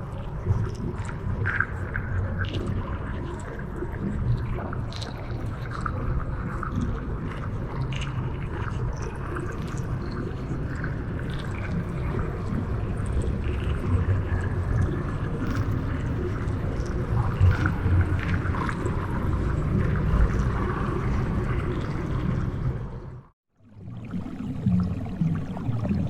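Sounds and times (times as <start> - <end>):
underwater low rumble: 0.0 - 26.0
water gurgling: 0.0 - 26.0.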